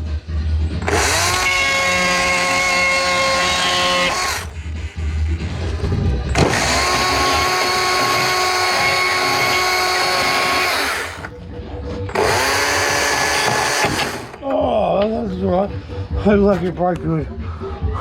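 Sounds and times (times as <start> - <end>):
power tool running: 0.8 - 4.8, 6.3 - 11.4, 12.1 - 14.4.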